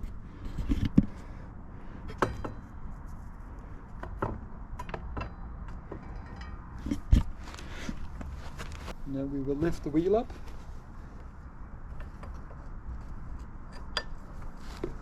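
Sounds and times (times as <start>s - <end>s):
light metallic clinks and knocks: 2.1s - 2.8s, 4.2s - 7.1s.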